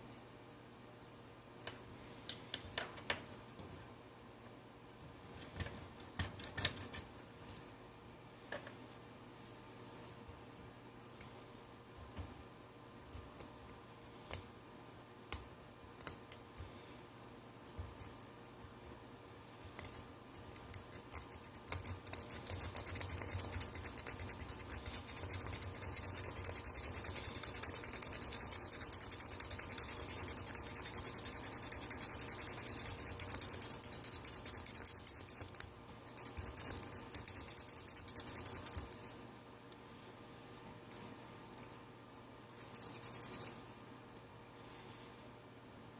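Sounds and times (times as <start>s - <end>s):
fast scratching strokes: 21.0s - 39.1s.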